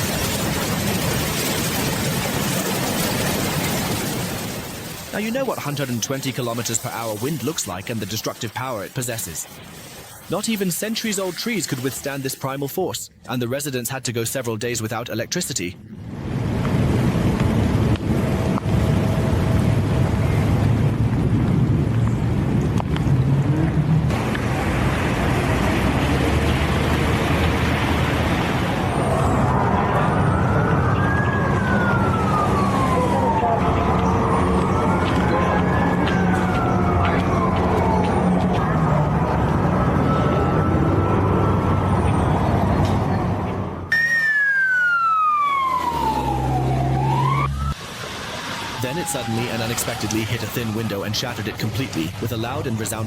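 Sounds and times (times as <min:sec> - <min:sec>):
emergency siren wailing: 0:24.4 - 0:52.6.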